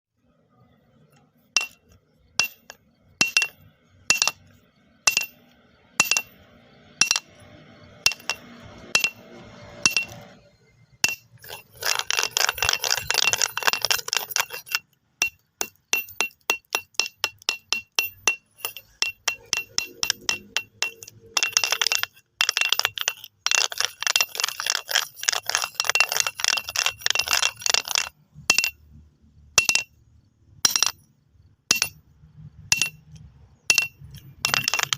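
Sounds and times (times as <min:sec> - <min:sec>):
stones knocking together: 0:11.1 - 0:28.8, 0:33.7 - 0:34.9.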